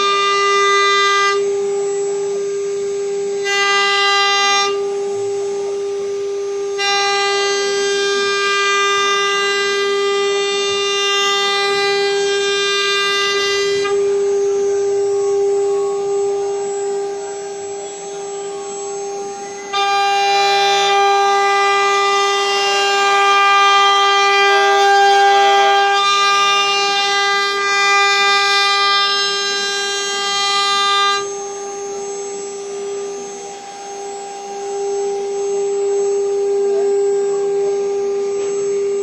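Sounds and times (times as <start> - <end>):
harsh whine: 0.0 - 39.0
router spindle whine: 0.0 - 39.0.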